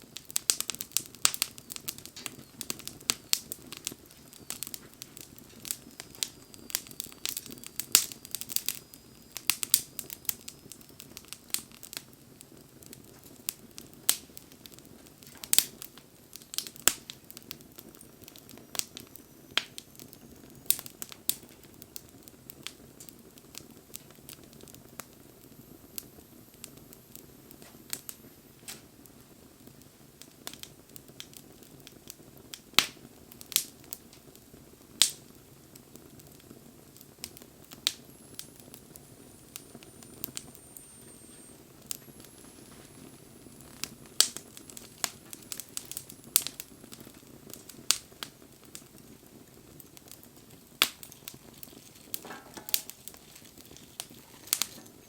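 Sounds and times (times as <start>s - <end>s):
wood fire crackling and popping: 0.0s - 55.0s
low steady fire rush: 34.7s - 55.0s.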